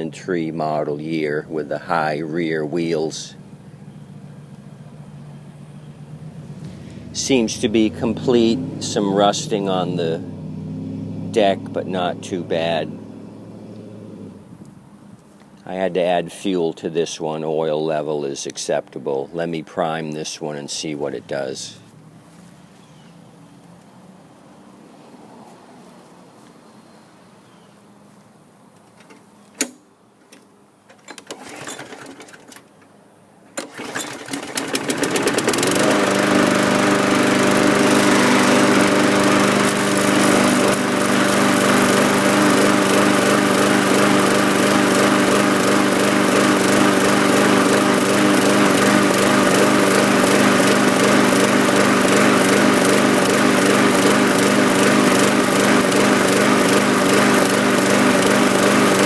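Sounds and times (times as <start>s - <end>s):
lawn mower engine running: 0.0s - 16.7s, 30.9s - 59.0s.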